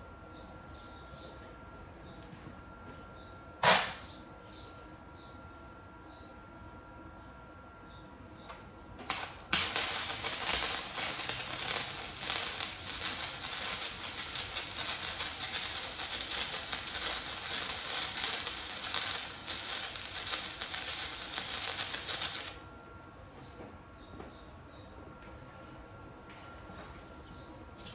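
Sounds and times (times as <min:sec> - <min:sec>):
welding arc crackling: 0:09.0 - 0:22.6.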